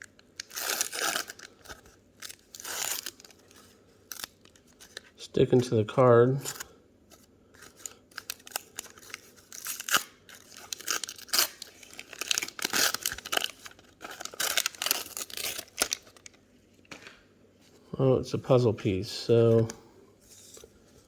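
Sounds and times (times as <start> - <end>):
wax paper wrapper tearing: 0.0 - 5.0, 7.7 - 16.4.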